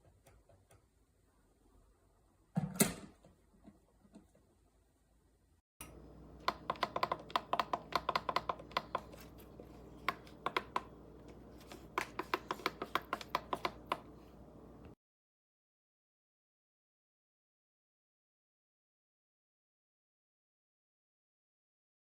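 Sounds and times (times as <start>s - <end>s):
steady low hum: 5.8s - 15.0s
rapid irregular clicking: 5.9s - 15.0s.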